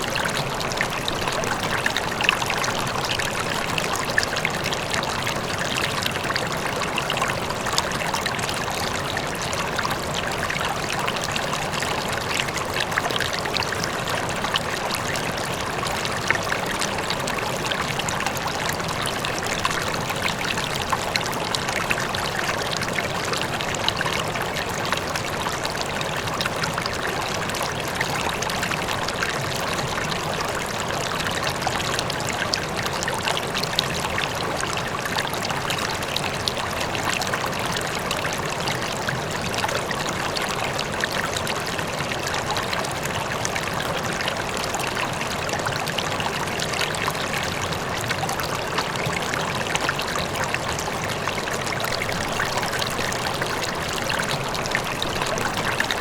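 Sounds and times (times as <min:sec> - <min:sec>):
river water flowing: 0:00.0 - 0:56.0
distant waterfall: 0:46.8 - 0:56.0.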